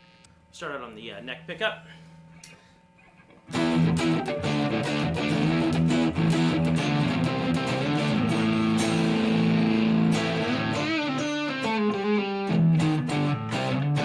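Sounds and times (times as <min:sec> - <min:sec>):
electric guitar chords and lead: 0:03.5 - 0:14.0.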